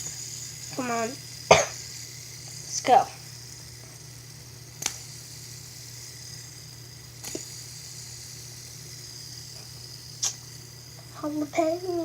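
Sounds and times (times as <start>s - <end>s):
fidget spinner whirring: 0.0s - 12.0s.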